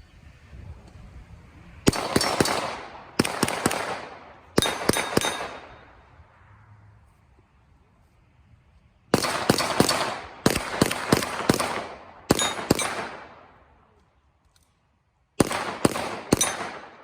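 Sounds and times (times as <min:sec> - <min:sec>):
gunshot ringing: 0:01.9 - 0:05.9, 0:09.2 - 0:13.4, 0:15.4 - 0:17.0
pistol shots: 0:01.9 - 0:06.0, 0:09.1 - 0:13.6, 0:15.4 - 0:17.0.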